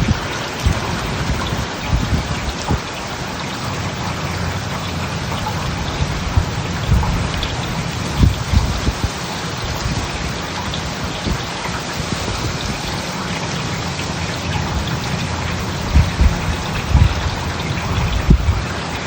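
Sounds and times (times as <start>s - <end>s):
heavy rain pouring: 0.0s - 19.0s
low thumps: 15.7s - 18.7s.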